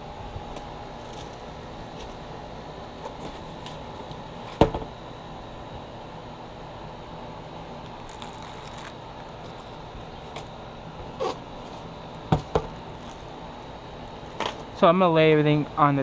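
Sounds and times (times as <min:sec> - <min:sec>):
steady low hum: 0:00.0 - 0:16.0
knock on hard surface: 0:04.6 - 0:04.9.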